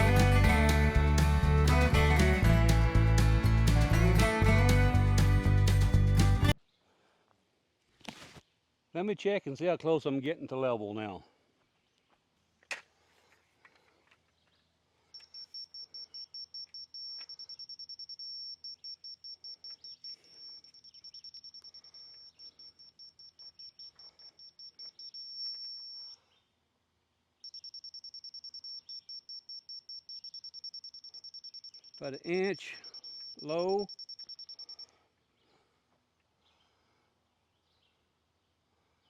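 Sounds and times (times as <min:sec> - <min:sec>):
rapid high-pitched beeping: 0:27.4 - 0:34.9.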